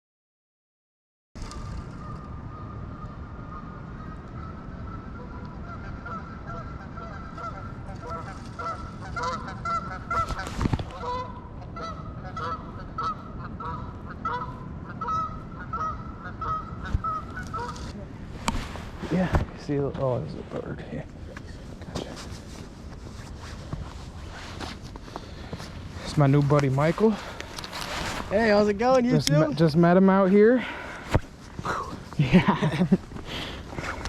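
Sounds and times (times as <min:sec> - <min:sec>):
geese honking: 0:02.0 - 0:18.0.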